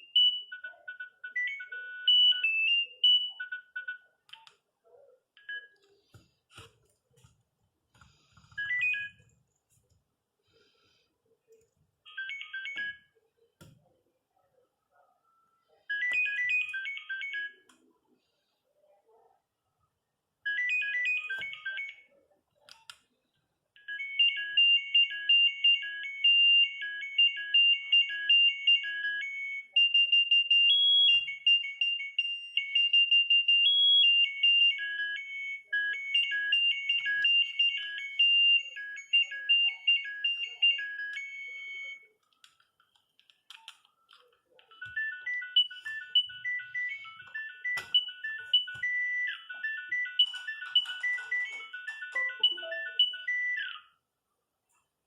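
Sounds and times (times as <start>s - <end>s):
mobile phone ringtones beeping: 0.0s - 4.2s, 8.1s - 9.3s, 12.1s - 13.2s, 15.6s - 17.7s, 20.4s - 22.2s, 23.8s - 42.2s, 44.6s - 54.0s.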